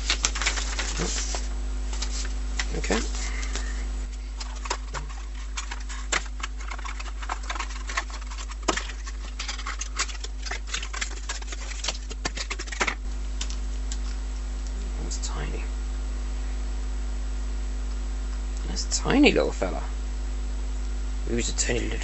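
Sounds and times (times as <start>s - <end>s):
packaging clicks and crinkles: 0.0s - 14.2s
low electrical hum: 0.0s - 22.0s.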